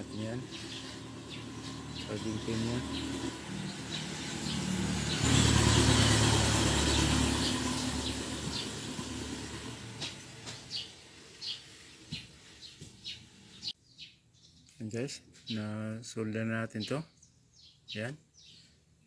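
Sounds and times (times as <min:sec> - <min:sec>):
vehicle engine passing by: 0:00.0 - 0:13.7
bird chirping: 0:00.0 - 0:19.0.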